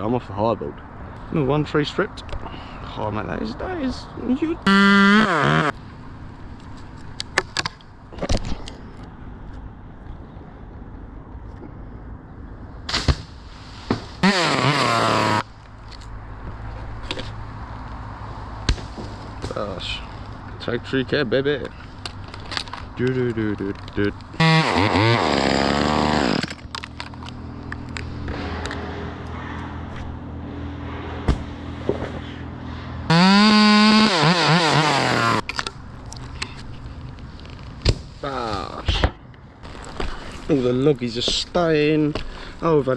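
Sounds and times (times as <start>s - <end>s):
chainsaw revving and idling: 4.7s - 5.7s, 14.2s - 15.5s, 24.4s - 26.6s, 33.1s - 35.4s.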